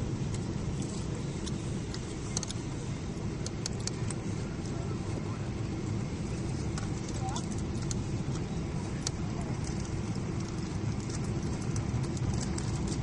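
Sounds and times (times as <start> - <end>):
airliner cabin engine rumble: 0.0 - 13.0
light clicks and rattles: 0.3 - 2.6, 6.6 - 13.0.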